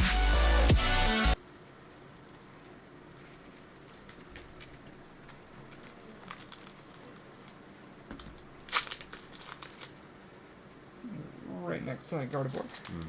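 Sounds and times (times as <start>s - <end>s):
cards crinkling: 1.4s - 10.0s, 12.3s - 13.0s.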